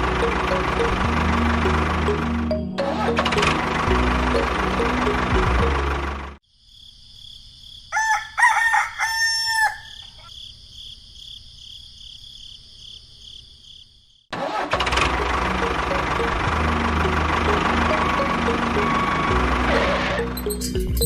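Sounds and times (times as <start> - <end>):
loud machine-like noise: 0.0 - 6.4, 14.4 - 20.4
insects chirring: 6.4 - 14.3
rooster crowing: 7.9 - 10.3.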